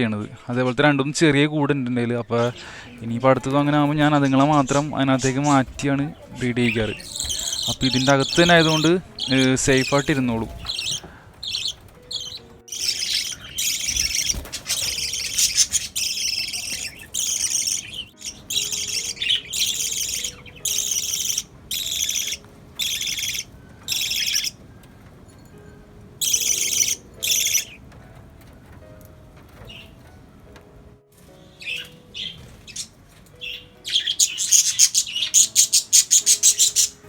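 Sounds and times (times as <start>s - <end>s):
parrots giving shrill calls: 6.6s - 24.6s, 26.2s - 27.8s, 31.6s - 37.0s.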